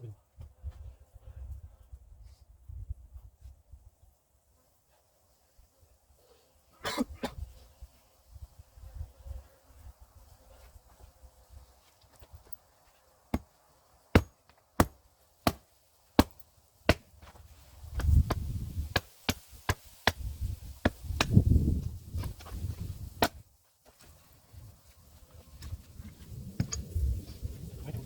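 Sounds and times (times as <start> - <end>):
axe chopping firewood: 13.3 - 23.5.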